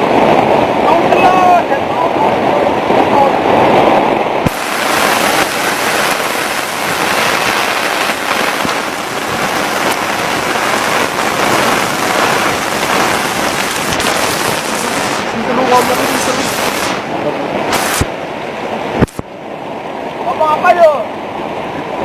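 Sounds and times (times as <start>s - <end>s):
heavy rain pouring: 4.4s - 19.2s.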